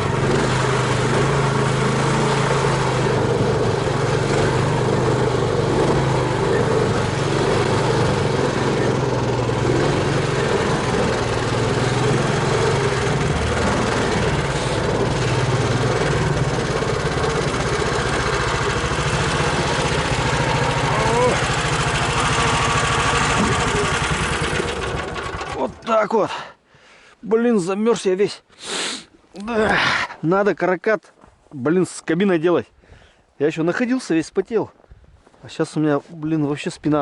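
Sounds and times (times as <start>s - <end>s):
vehicle engine running: 0.0s - 25.8s.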